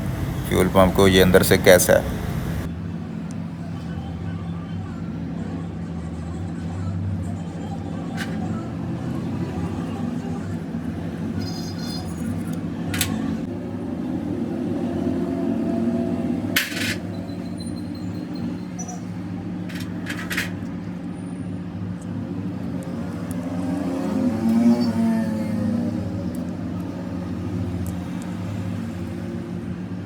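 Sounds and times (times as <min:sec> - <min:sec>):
vehicle passing by: 0:00.0 - 0:02.7, 0:22.1 - 0:29.9
vehicle engine humming: 0:00.0 - 0:03.1.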